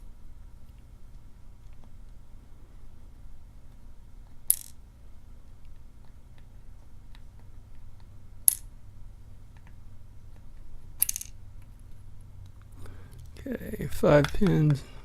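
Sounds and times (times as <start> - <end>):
metal pins clinking on hard surface: 4.5 - 4.8, 11.0 - 11.4.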